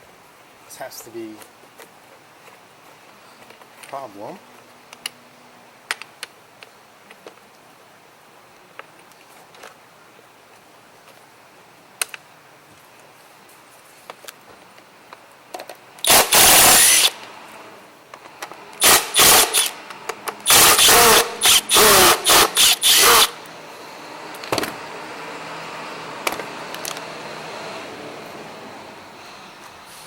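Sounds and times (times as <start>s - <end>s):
recoil starter pulls: 18.8s - 19.8s, 20.4s - 23.4s.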